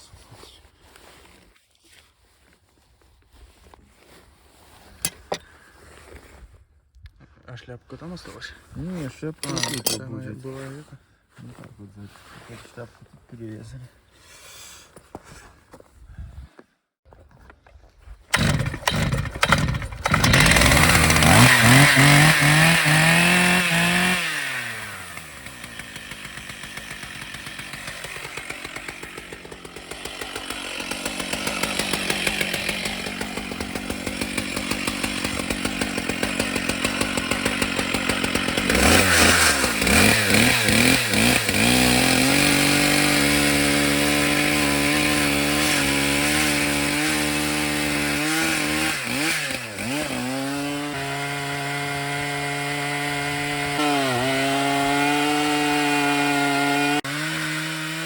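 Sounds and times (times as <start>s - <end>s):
chainsaw engine revving: 18.3s - 58.0s.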